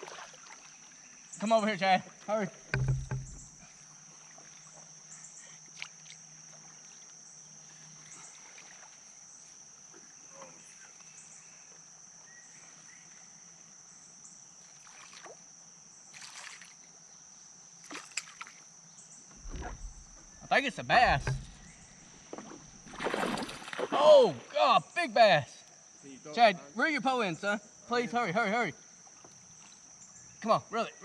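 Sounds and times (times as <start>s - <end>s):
faint splashes: 0.0s - 1.1s, 1.9s - 9.6s, 14.7s - 15.5s, 16.1s - 16.9s, 17.8s - 18.7s, 19.3s - 24.7s.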